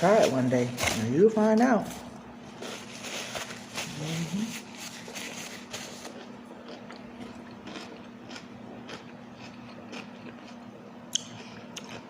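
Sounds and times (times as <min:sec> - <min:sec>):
crisp crunches: 0:02.5 - 0:09.0
person chewing food: 0:04.6 - 0:12.0.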